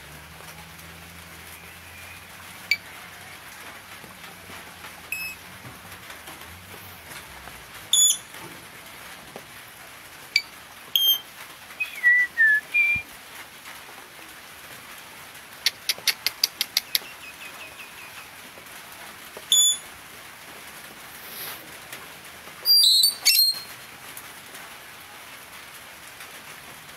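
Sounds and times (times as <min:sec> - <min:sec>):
parrot calling: 0:22.6 - 0:23.7.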